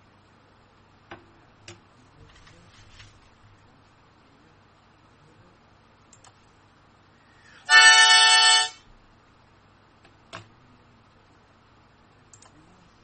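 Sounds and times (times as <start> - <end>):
faint clicks: 6.1 - 6.4, 12.3 - 12.6
held flat tone: 7.7 - 8.8.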